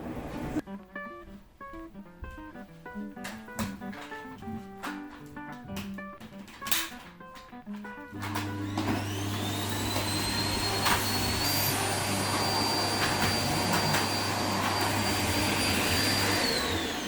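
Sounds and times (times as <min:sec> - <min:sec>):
vacuum cleaner running: 0:08.1 - 0:17.0.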